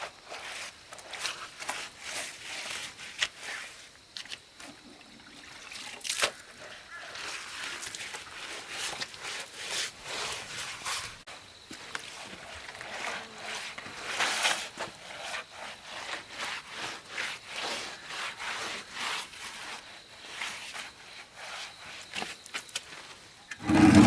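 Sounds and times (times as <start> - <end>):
scraping strokes: 23.5 - 24.0.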